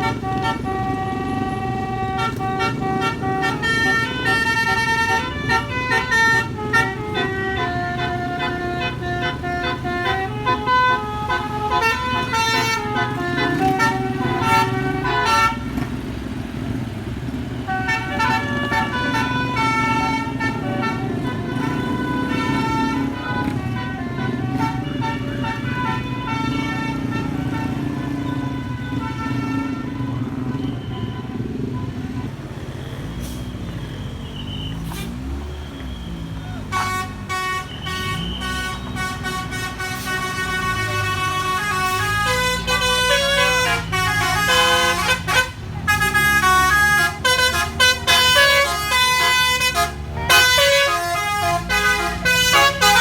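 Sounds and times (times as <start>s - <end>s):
musical air horn tune: 0.0s - 15.7s, 17.7s - 30.0s, 36.7s - 53.0s
bus engine drone: 0.0s - 53.0s.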